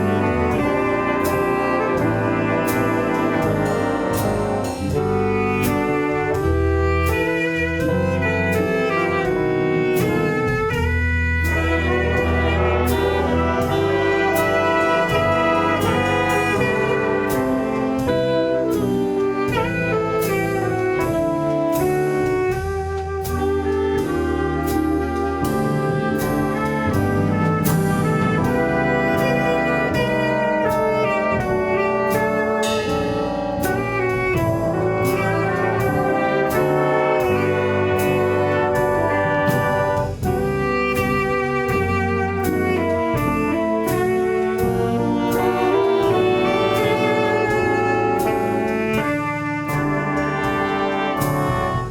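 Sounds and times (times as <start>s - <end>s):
brass and woodwind ensemble: 0.0s - 51.9s
drum and cymbal beat: 0.0s - 51.9s.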